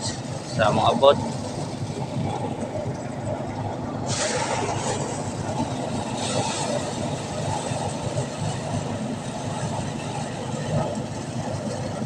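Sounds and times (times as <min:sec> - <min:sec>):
engine-driven machine running: 0:00.0 - 0:12.0.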